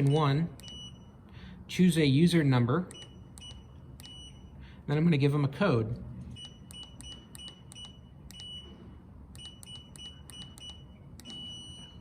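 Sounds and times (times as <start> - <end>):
keypad beeping: 0.0 - 1.2, 2.9 - 4.6, 6.3 - 12.0.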